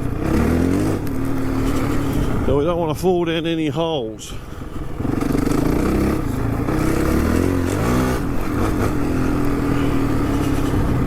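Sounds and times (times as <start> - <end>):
dirt bike engine running: 0.0 - 11.0.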